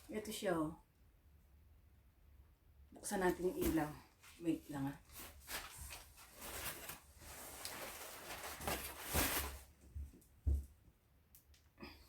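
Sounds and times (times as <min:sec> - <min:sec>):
rustling handling noise: 0:03.1 - 0:10.7.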